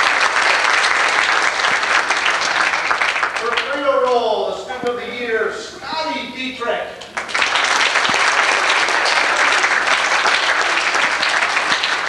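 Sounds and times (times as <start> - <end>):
audience applauding: 0.0 - 4.3, 7.1 - 12.0.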